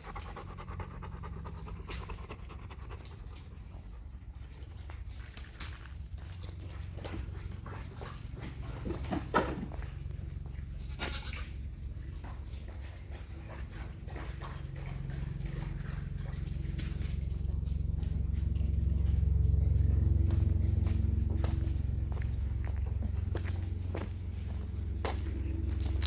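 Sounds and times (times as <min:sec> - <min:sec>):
low steady hum: 0:00.0 - 0:26.0
goat bleating: 0:10.7 - 0:11.6.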